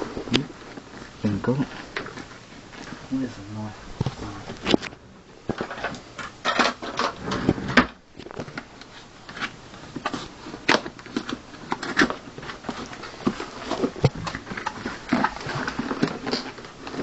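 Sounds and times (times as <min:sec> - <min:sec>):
box packaging being handled: 0:00.0 - 0:17.0.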